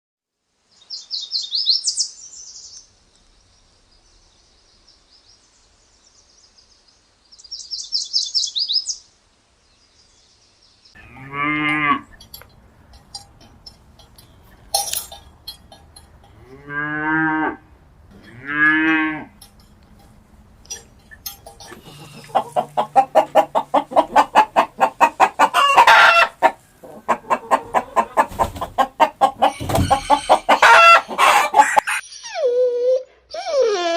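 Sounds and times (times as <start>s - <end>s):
deep farm animal calls: 11.0s - 13.2s, 16.2s - 19.5s, 20.7s - 32.0s.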